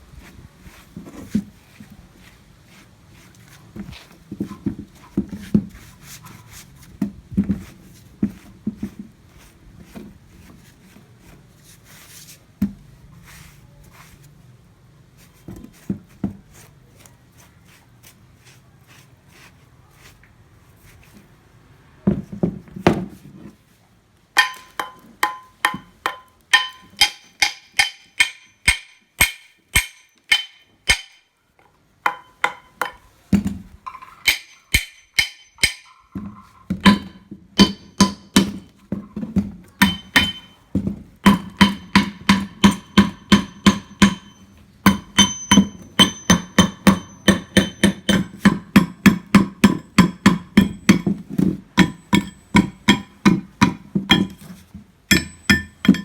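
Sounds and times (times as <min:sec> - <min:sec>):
dull knocks and handling: 0:22.1 - 0:23.6, 0:35.2 - 0:56.0
hammer blows on metal ringing: 0:24.4 - 0:31.3, 0:36.8 - 0:38.7, 0:39.8 - 0:40.6, 0:41.3 - 0:51.0, 0:51.8 - 0:54.4, 0:55.1 - 0:56.0.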